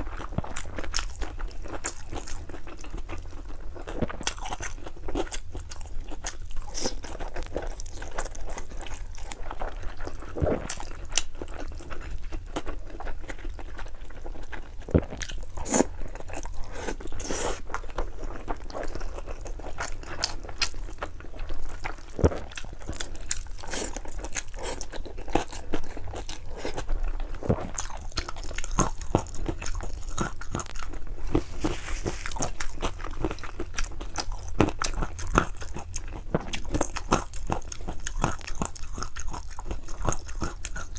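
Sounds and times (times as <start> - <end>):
person chewing noodles: 0.0 - 40.9.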